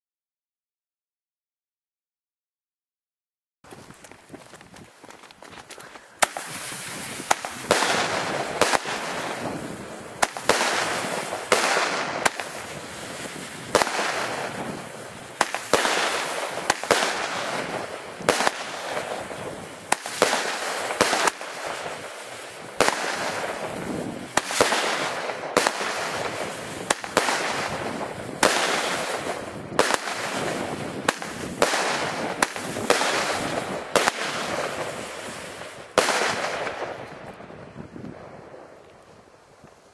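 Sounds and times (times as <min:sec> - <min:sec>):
firework launch bangs: 0:06.2 - 0:37.3
fizzing firework crackle: 0:06.2 - 0:37.4.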